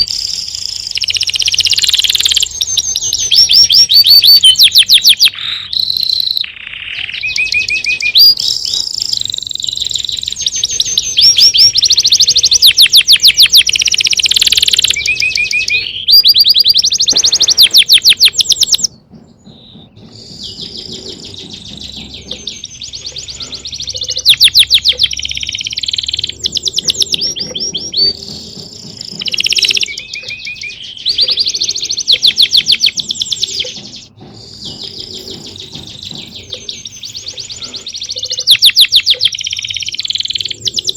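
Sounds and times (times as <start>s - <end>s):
songbird trills and chirps: 0.0s - 40.9s.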